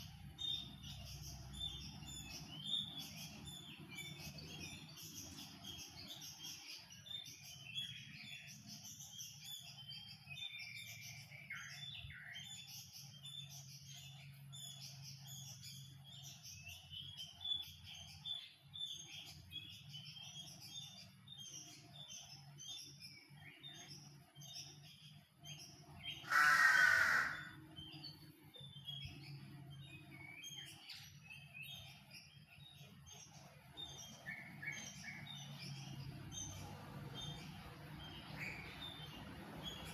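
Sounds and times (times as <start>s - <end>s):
small birds chirping and twittering: 0.0s - 39.9s
loud harsh bird call: 26.1s - 27.8s.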